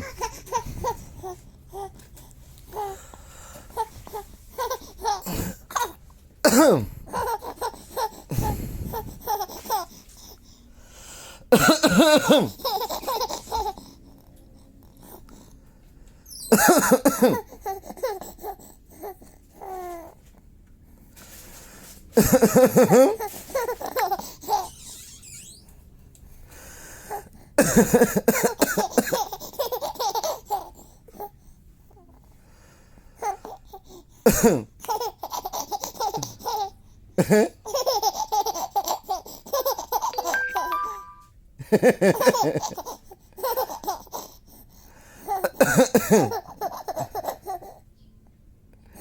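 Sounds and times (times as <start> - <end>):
baby laughing: 0.0 - 1.1, 7.1 - 8.3, 11.6 - 13.8, 37.7 - 41.2
man coughing: 6.5 - 7.0, 11.6 - 12.6, 16.6 - 17.4, 34.3 - 34.6.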